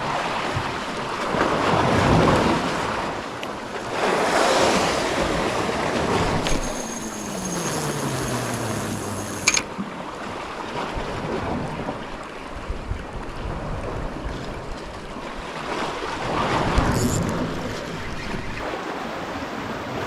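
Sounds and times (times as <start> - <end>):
sea waves on rocky shore: 0.0 - 20.0
thin high whine: 6.0 - 9.7, 16.9 - 18.6.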